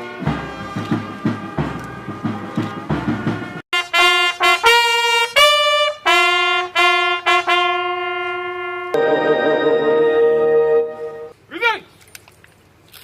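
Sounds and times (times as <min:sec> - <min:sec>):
band music with drums: 0:00.0 - 0:04.1
solo bugle call: 0:03.8 - 0:11.3.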